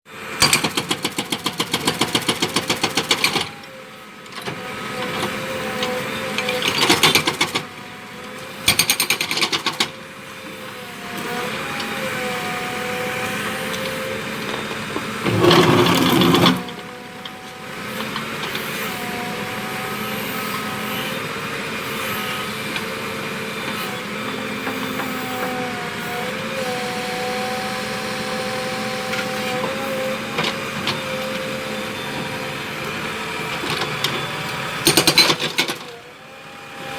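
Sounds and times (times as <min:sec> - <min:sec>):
earth mover engine whining: 0:10.8 - 0:25.2
hydraulic breaker hammering: 0:14.7 - 0:17.0.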